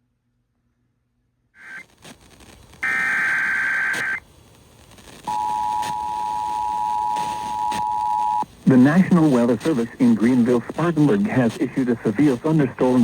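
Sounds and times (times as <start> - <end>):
radio static hiss: 1.6 - 13.0
buzzing data bursts: 2.8 - 4.2.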